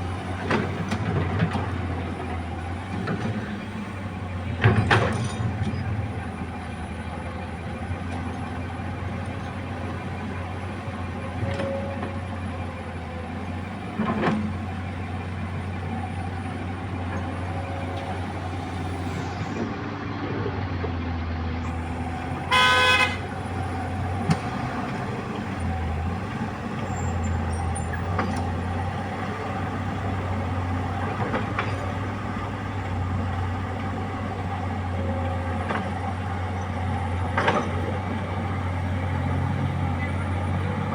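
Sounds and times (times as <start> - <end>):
excavator diesel engine: 0.0 - 40.9
vehicle horn blast: 22.4 - 23.3.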